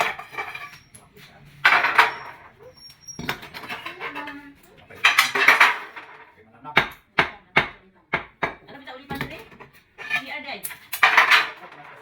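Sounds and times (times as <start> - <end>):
tool scraping ceramic tile: 0.0 - 12.0
sharp knocks: 6.8 - 9.7.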